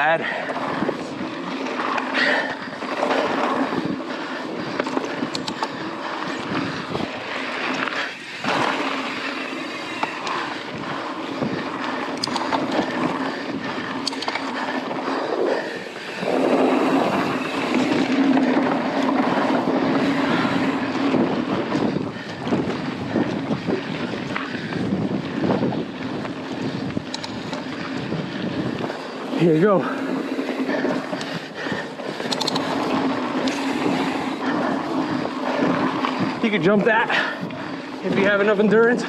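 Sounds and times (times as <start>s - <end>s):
bike rattling: 0.0s - 39.0s
knobby tyres rolling on dirt: 0.0s - 39.0s
wind on microphone: 15.0s - 36.6s.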